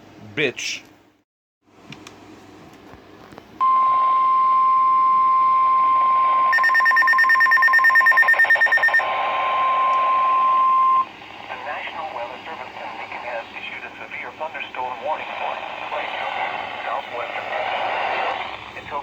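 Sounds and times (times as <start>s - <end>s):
steady alarm tone: 3.6s - 11.1s
rapid high beeping: 6.5s - 9.0s.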